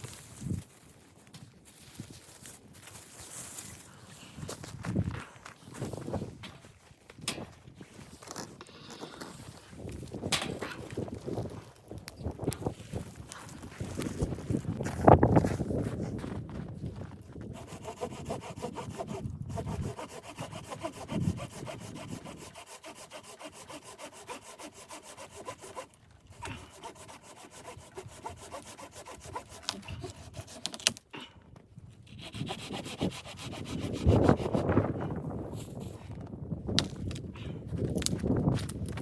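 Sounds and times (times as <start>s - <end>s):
saw cutting through wood: 17.5s - 30.9s, 32.1s - 34.7s.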